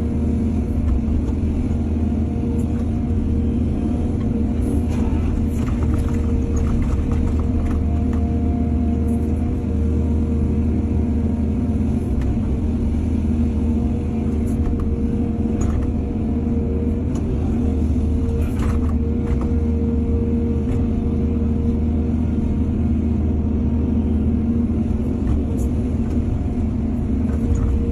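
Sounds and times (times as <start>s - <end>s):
constant machine whine: 0.0s - 27.9s
diesel engine running: 0.0s - 27.9s.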